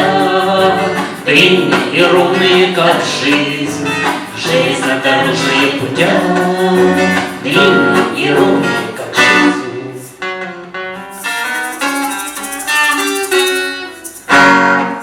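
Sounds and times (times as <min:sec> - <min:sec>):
guitar accompaniment: 0:00.0 - 0:15.0
violin melody: 0:03.8 - 0:10.0, 0:11.1 - 0:15.0.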